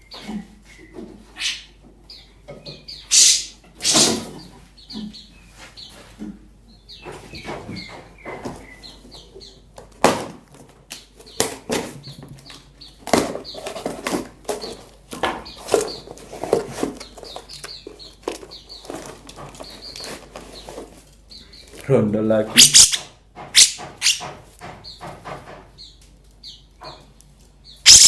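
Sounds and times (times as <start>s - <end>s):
short high bird chirps: 27.8s - 28.0s.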